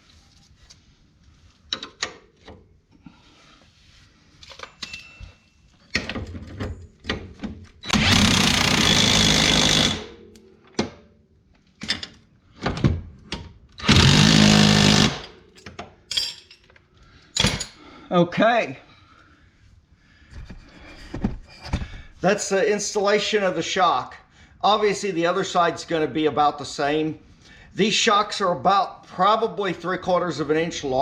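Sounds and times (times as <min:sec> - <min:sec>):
impact wrench: 0:07.8 - 0:10.2, 0:13.8 - 0:15.7.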